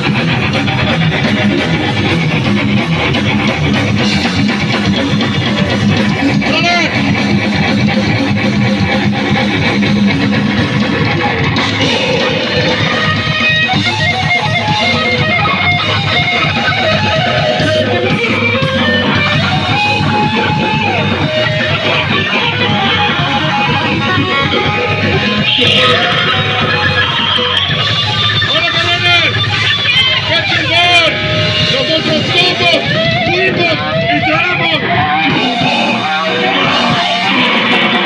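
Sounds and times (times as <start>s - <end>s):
distorted electric guitar: 0.0s - 38.0s
fast dense drumming: 0.0s - 38.0s.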